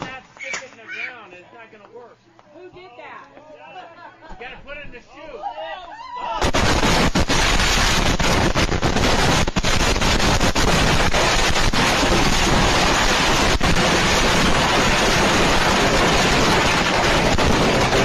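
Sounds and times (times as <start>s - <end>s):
fireworks popping: 0.0s - 0.8s, 6.4s - 18.0s
fireworks rushing hiss: 6.4s - 18.0s.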